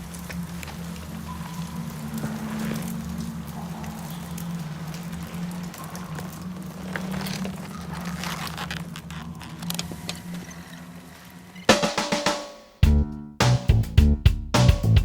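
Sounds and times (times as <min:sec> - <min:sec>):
crackling and crinkling: 0:00.0 - 0:11.7.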